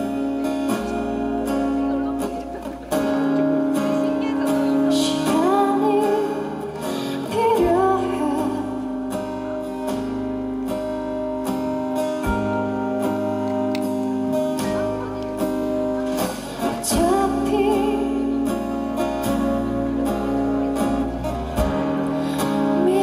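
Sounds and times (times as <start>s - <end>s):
acoustic guitar strumming: 0.0s - 23.0s
woman singing: 3.7s - 9.3s, 16.6s - 19.1s, 22.3s - 23.0s.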